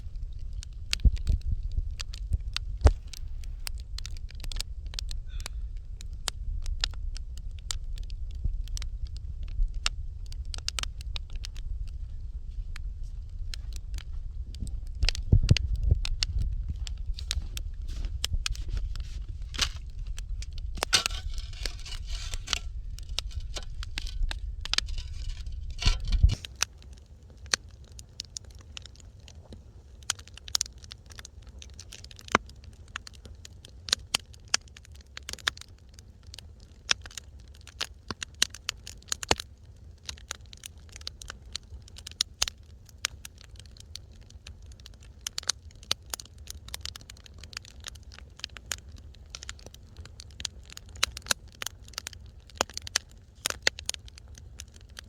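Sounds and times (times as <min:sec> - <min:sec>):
low rumble and hiss: 0:00.0 - 0:31.8
wood fire crackling: 0:00.0 - 0:55.0
sharp pops of fire: 0:00.1 - 0:11.6, 0:13.7 - 0:33.3, 0:33.9 - 0:55.0.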